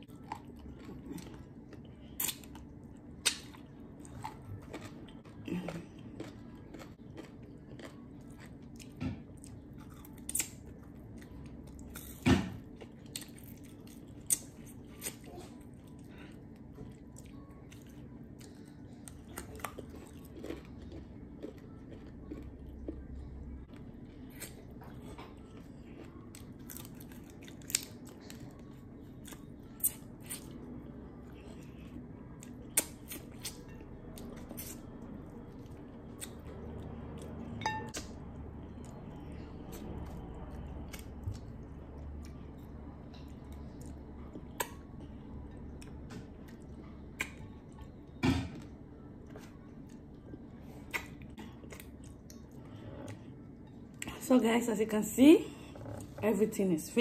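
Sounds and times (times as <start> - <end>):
person chewing and biting food: 0.1 - 16.1, 16.9 - 30.6.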